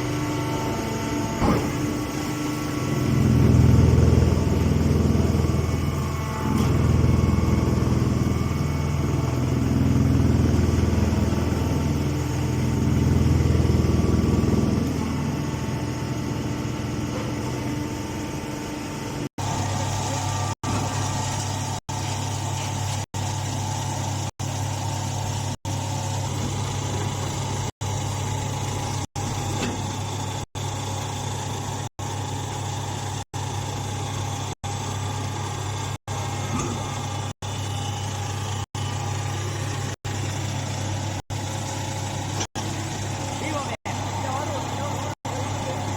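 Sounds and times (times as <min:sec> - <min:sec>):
baler motor humming: 0:00.0 - 0:21.8.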